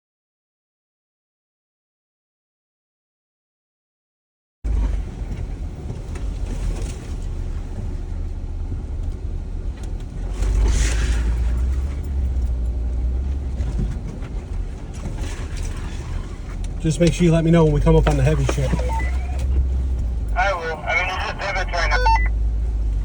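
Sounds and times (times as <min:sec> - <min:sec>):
vehicle engine rumble: 0:04.7 - 0:23.0.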